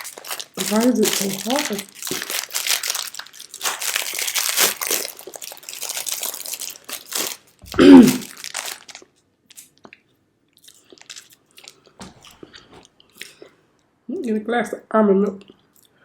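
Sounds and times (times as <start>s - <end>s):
wrapper crinkling and crunching: 0.0s - 9.8s, 10.6s - 12.8s.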